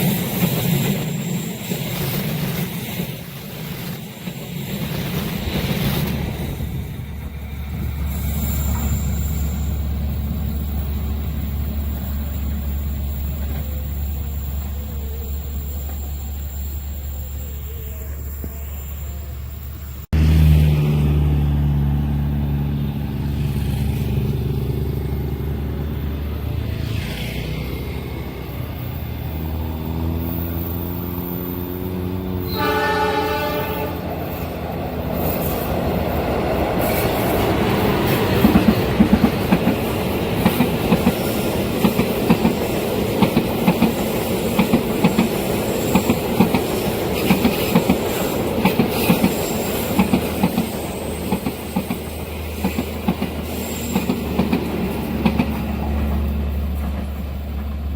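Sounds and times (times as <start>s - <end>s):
train wheels clickety-clack: 0.0s - 16.2s, 33.4s - 57.9s
diesel engine: 19.2s - 32.5s
train horn blast: 32.3s - 34.4s.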